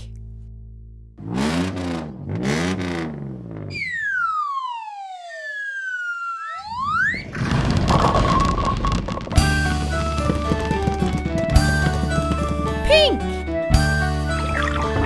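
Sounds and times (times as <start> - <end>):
falling whistle: 3.7 - 7.4
rising whistle: 3.7 - 7.4
loud rattling clatter: 7.5 - 12.9.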